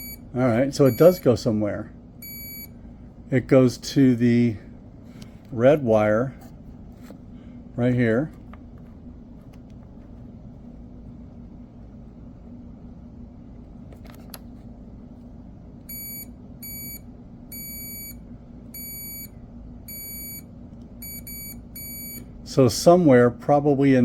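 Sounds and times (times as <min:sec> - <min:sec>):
multimeter beeping: 0:00.0 - 0:01.3, 0:02.2 - 0:02.7, 0:15.9 - 0:18.2, 0:18.8 - 0:19.3, 0:19.9 - 0:20.4, 0:21.0 - 0:22.2
low steady hum: 0:00.0 - 0:24.0.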